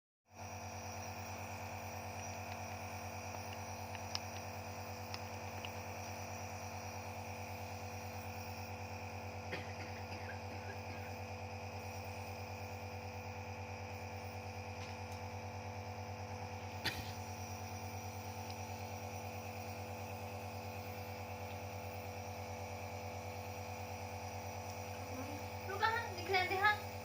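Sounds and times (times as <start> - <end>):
nebulizer compressor humming: 0.3 - 27.0.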